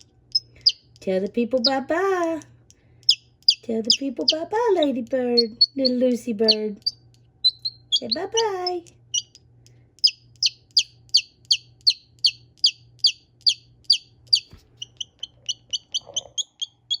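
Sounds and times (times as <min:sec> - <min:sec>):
chick peeping: 0:01.6 - 0:02.4, 0:03.0 - 0:09.4, 0:10.0 - 0:17.0.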